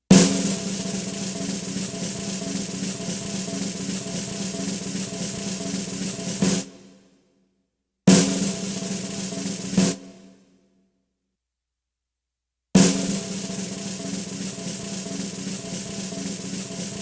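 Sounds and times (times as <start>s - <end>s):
snare drum roll: 0.1s - 6.9s, 8.1s - 10.2s, 12.8s - 17.0s.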